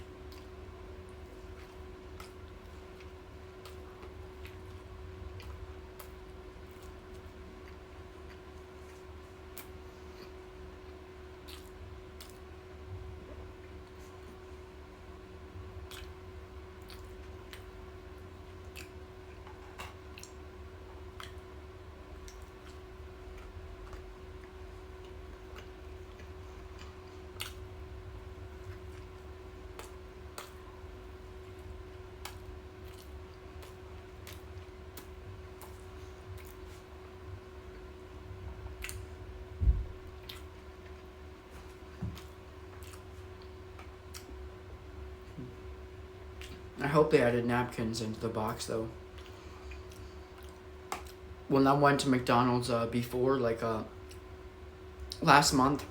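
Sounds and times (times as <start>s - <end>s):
person chewing food: 0.0s - 44.6s, 46.3s - 46.7s, 49.0s - 51.3s
steady low hum: 0.0s - 55.9s
mouth clicks and smacks: 38.8s - 39.1s.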